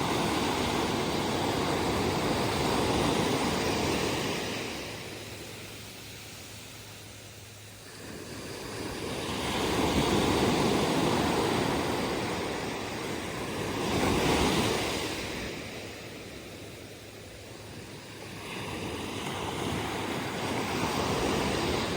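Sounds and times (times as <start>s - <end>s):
surf breaking on a beach: 0.0s - 5.7s, 7.8s - 21.9s.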